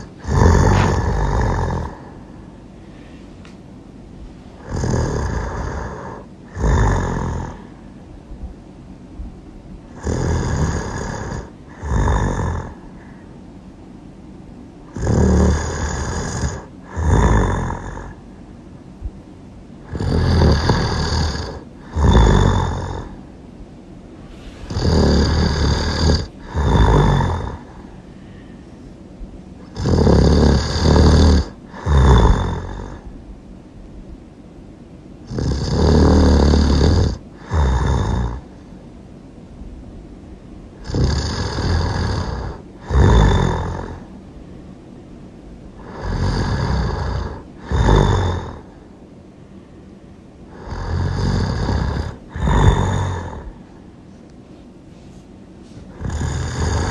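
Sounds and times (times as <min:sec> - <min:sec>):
person snoring loudly: 0:00.0 - 0:02.3, 0:04.6 - 0:07.8, 0:09.9 - 0:13.1, 0:14.9 - 0:18.2, 0:19.8 - 0:23.2, 0:24.4 - 0:28.0, 0:29.6 - 0:33.1, 0:35.2 - 0:38.6, 0:40.8 - 0:44.1, 0:45.8 - 0:48.8, 0:50.5 - 0:53.7, 0:55.9 - 0:56.9.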